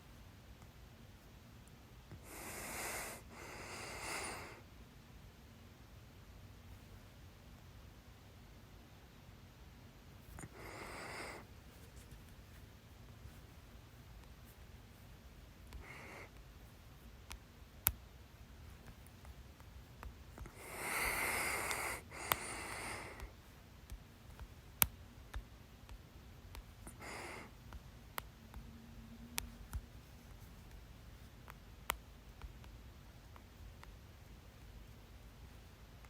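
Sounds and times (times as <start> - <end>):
person breathing heavily: 2.2 - 4.6, 10.3 - 11.5, 15.7 - 16.4, 20.4 - 23.3, 26.8 - 27.6.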